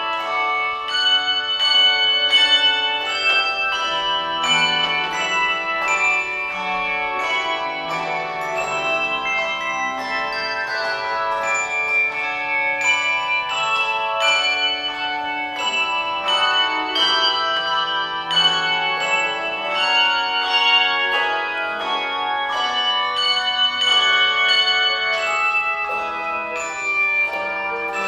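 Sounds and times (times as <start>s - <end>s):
tuned bells playing melody: 0.0s - 28.0s.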